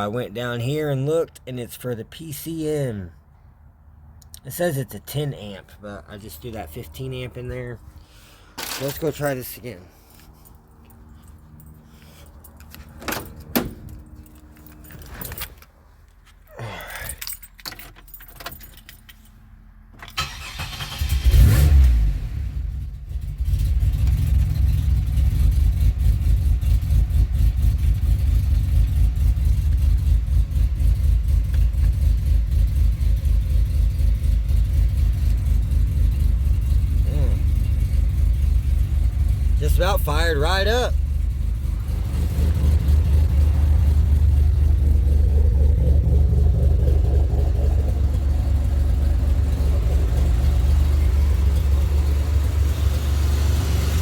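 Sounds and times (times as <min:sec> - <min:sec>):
car engine cranking and idling: 0:03.9 - 0:54.0
keys jangling: 0:08.6 - 0:15.7, 0:16.8 - 0:19.4.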